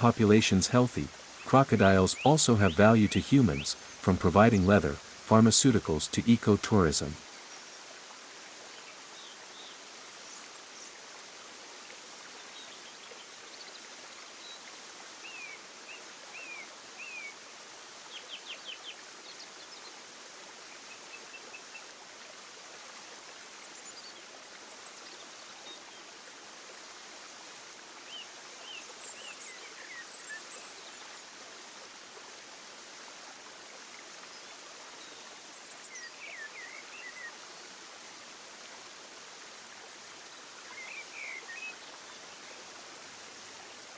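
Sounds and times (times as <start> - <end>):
stream water rushing: 0.0 - 43.9.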